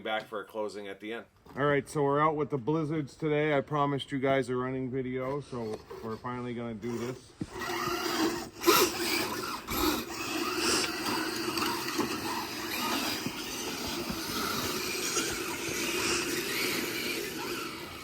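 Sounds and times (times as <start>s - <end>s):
electric motor and gearbox whine: 6.8s - 18.0s
tracks grinding over snow: 6.8s - 18.0s.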